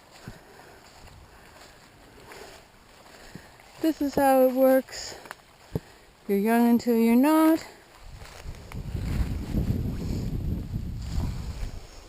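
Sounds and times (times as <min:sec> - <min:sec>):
outdoor background hiss: 0:00.0 - 0:12.0.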